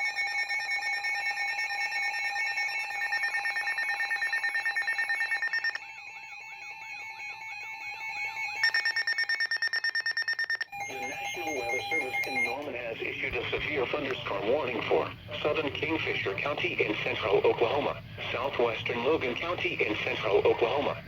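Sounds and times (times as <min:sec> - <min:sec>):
fast pulsing alarm beeps: 0:00.0 - 0:12.6
warbling alarm tone: 0:00.0 - 0:12.6
steady alarm tones: 0:00.0 - 0:21.0.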